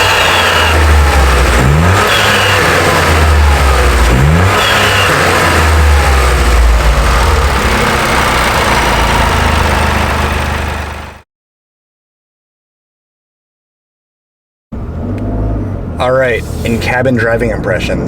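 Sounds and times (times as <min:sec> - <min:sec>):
turbocharged car engine revving: 0:00.0 - 0:11.2.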